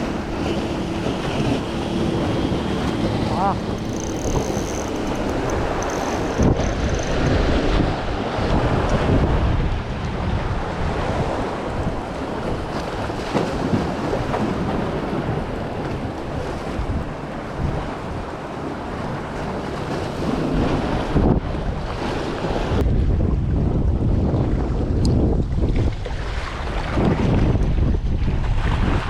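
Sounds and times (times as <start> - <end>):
waves against a seawall: 0.0 - 29.0
wind buffeting microphone: 0.0 - 29.0.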